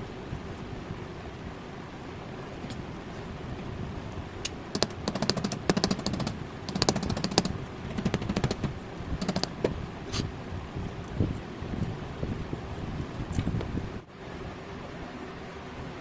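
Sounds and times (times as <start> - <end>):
sharp clicks and light taps: 4.4 - 9.8.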